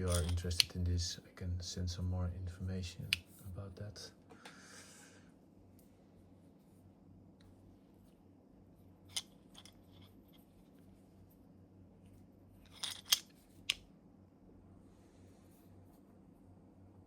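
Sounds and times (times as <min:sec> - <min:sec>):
low steady hum: 0:00.0 - 0:17.0
small hard parts clicking: 0:12.6 - 0:13.8.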